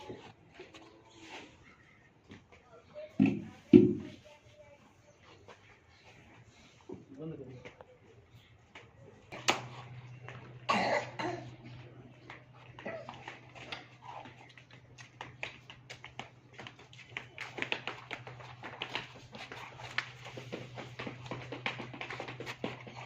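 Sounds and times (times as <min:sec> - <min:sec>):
steady low hum: 0:07.9 - 0:23.0
person coughing: 0:10.7 - 0:11.6.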